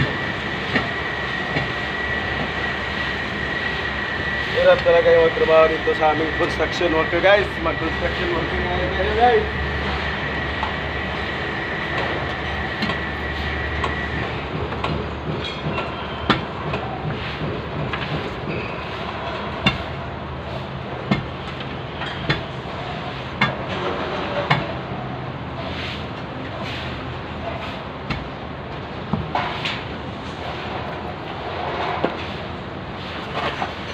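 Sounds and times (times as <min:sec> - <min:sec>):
thin steady whine: 0:00.0 - 0:20.6
machinery rumbling: 0:00.0 - 0:33.9.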